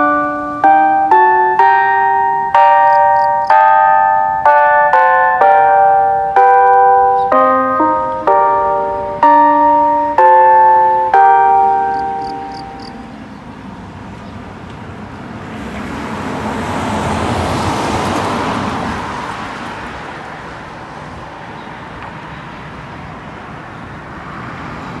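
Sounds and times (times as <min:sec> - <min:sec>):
loudspeaker chime ringing: 0:00.0 - 0:13.3
vehicle passing by: 0:15.2 - 0:21.0.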